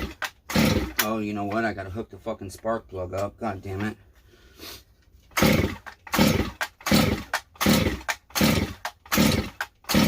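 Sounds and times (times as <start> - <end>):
chainsaw pull-start cranking: 0.0 - 1.7, 5.3 - 10.0.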